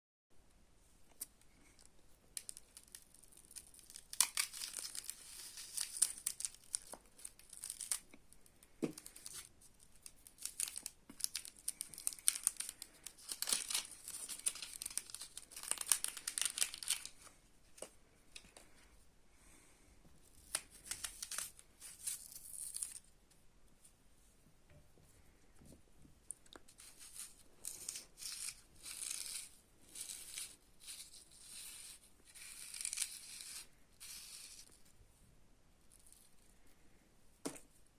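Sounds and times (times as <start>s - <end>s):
plastic or paper crinkling and tearing: 2.4s - 17.4s, 20.4s - 23.0s, 26.6s - 34.8s.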